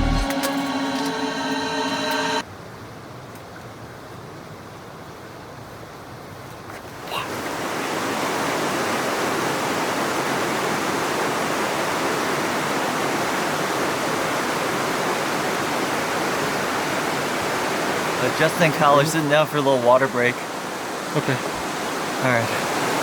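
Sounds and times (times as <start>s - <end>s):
flowing water rushing: 7.3s - 23.0s.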